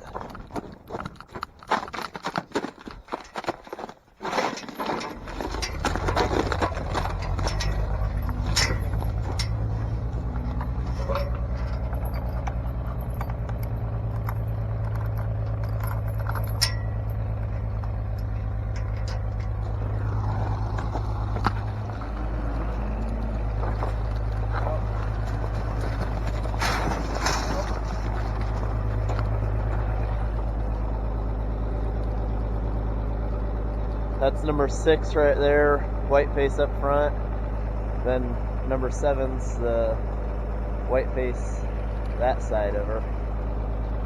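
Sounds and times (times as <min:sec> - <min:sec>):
metal clinking and scraping: 0:00.0 - 0:30.9
vehicle engine running: 0:04.8 - 0:44.0.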